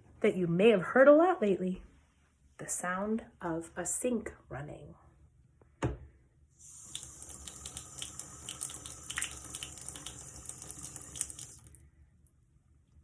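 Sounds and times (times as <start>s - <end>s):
tap water splashing into sink: 6.8s - 11.8s.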